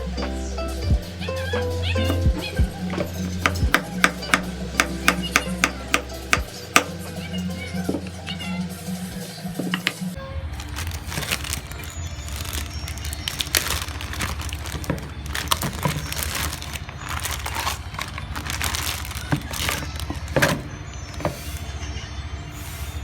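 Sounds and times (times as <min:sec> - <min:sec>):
irregular crackling and crinkling: 0:00.0 - 0:22.1
sharp clicks and knocks: 0:02.1 - 0:07.0.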